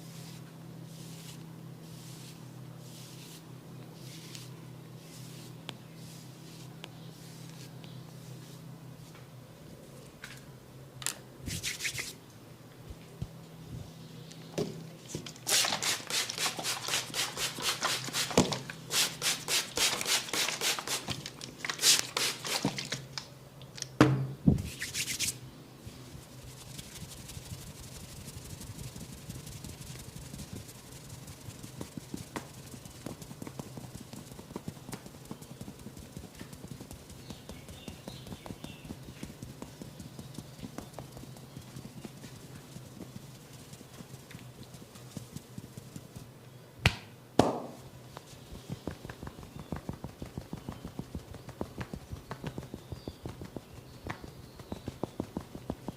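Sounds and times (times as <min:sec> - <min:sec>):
loud slaps: 0:46.8 - 0:47.8
percussive massage strikes: 0:46.8 - 0:47.8.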